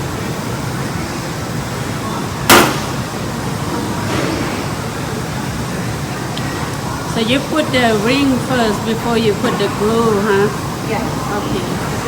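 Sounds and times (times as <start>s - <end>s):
steady background noise: 0.0s - 12.0s
sharp loud bang: 2.5s - 3.1s.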